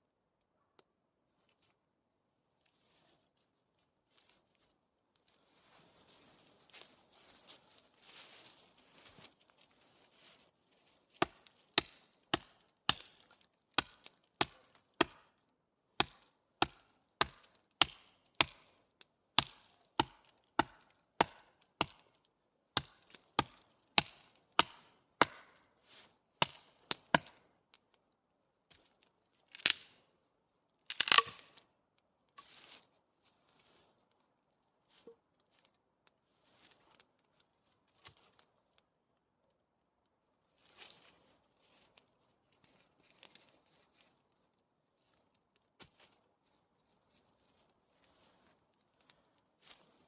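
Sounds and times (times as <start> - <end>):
blade chopping wood: 11.2 - 13.2, 13.8 - 15.2, 16.0 - 18.6, 19.4 - 22.0, 22.8 - 25.6, 26.4 - 27.4, 30.9 - 31.5.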